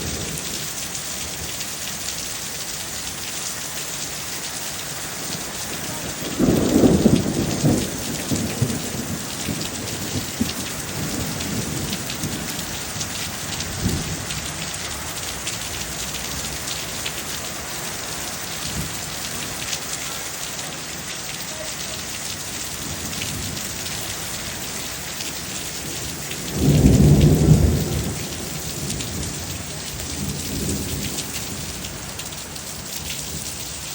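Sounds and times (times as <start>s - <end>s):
heavy rain: 0.0s - 33.9s
thunder rolling: 5.5s - 17.1s, 25.7s - 32.1s.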